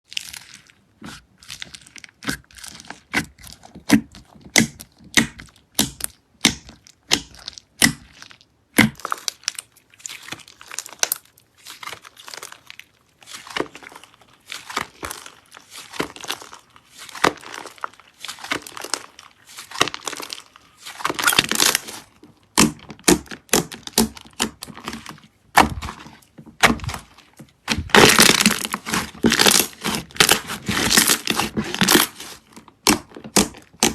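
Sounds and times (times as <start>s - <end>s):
slime clicking and popping: 0.2s - 9.7s, 21.1s - 26.0s, 26.6s - 33.9s.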